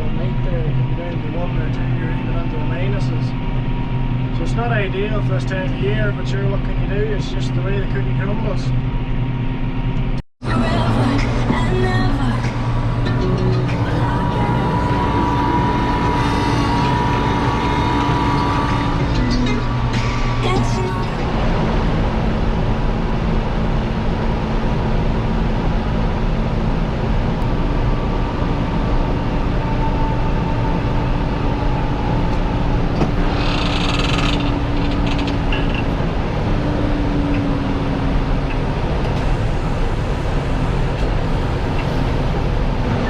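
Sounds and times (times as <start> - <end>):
tractor engine under load: 31.5 - 43.0.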